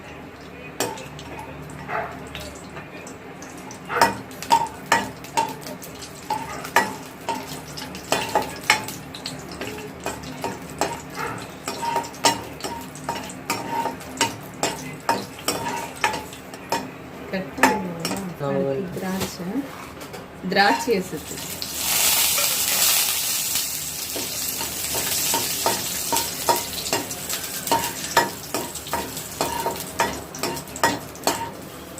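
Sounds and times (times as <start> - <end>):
frying sizzle: 0.0 - 31.9
spoon scraping pan: 11.7 - 16.8, 24.1 - 31.6.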